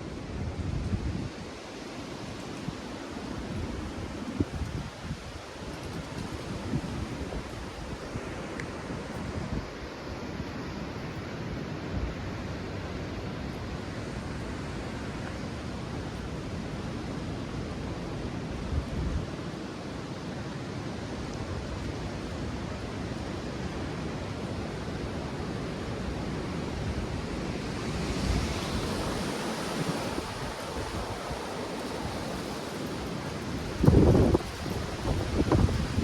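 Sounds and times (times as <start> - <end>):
gusty storm wind rushing: 0.0 - 36.0
wind buffeting microphone: 2.4 - 12.6, 24.7 - 36.0.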